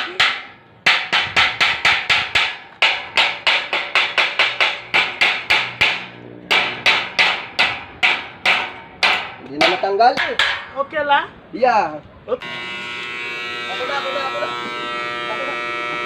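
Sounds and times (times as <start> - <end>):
hammer striking metal: 0.0 - 10.8.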